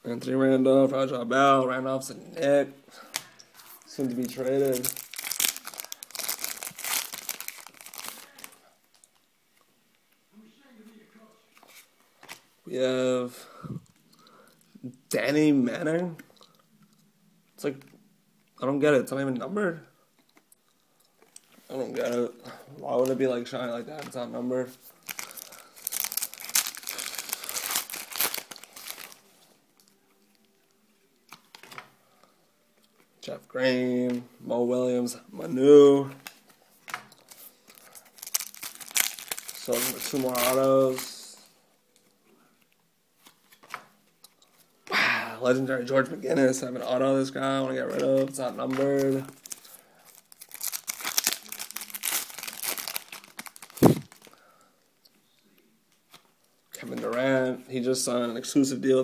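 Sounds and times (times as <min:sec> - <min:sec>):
plastic wrapper tearing and crinkling: 0:03.1 - 0:08.6, 0:24.9 - 0:29.9, 0:37.1 - 0:41.3, 0:47.9 - 0:54.4.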